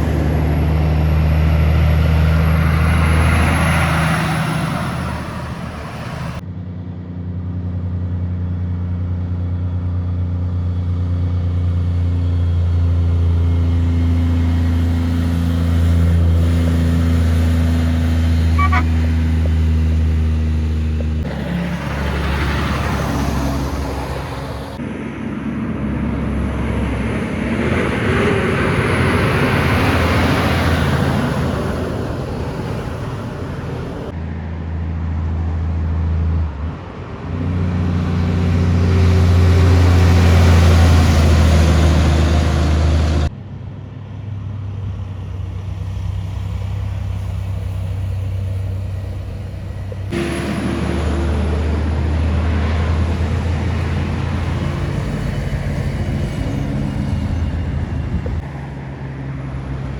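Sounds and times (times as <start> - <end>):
truck diesel engines passing: 0.0 - 6.4, 9.5 - 59.9
tyre and road noise: 0.0 - 6.4, 12.4 - 34.3, 35.2 - 59.9.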